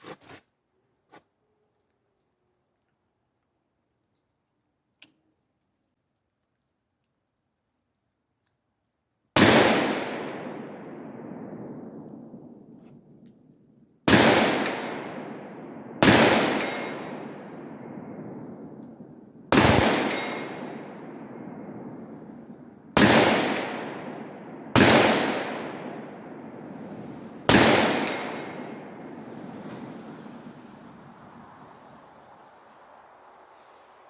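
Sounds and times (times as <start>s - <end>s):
rifle shots: 9.4s - 12.8s, 14.0s - 30.6s
rolling echo: 9.4s - 34.0s.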